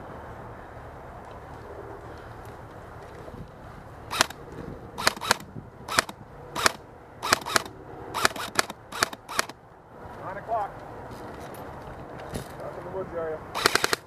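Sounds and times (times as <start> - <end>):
airsoft rifle shots: 4.1 - 4.4, 5.0 - 9.6, 13.5 - 14.0.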